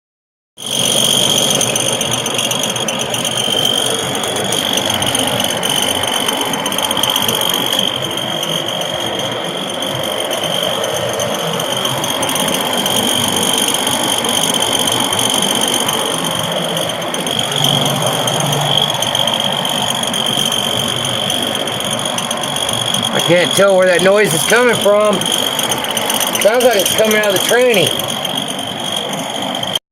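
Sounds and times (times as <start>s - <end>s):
high-pitched whine: 0.6s - 29.8s
pickup truck engine running: 0.6s - 29.8s.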